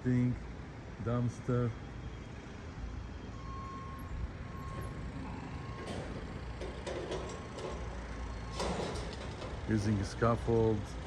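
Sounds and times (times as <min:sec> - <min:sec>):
low rumble of engines: 0:00.0 - 0:11.0.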